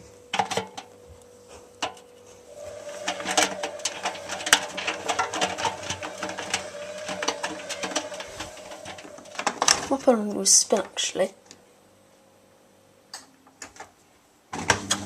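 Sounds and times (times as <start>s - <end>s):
washing machine drum motor humming: 0.0s - 11.5s, 14.6s - 15.0s
drum clicking and rattling: 1.8s - 11.0s.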